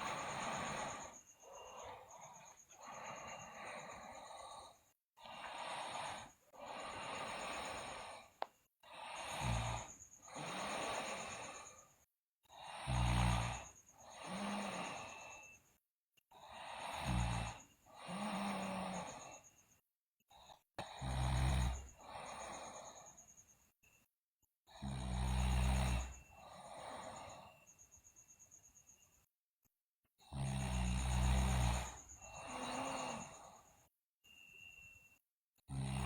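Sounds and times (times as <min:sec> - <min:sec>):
heavy breathing: 0:00.0 - 0:11.9
low rattling snore: 0:00.0 - 0:15.7, 0:16.4 - 0:19.6, 0:20.3 - 0:23.5, 0:24.7 - 0:29.1, 0:30.2 - 0:33.9, 0:35.7 - 0:36.0.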